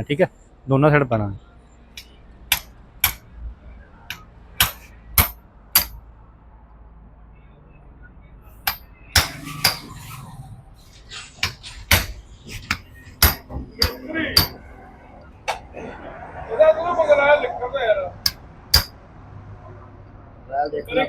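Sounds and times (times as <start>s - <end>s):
hammer striking metal: 2.0s - 3.3s, 4.1s - 6.0s, 8.6s - 10.0s, 11.4s - 14.7s, 18.2s - 19.0s.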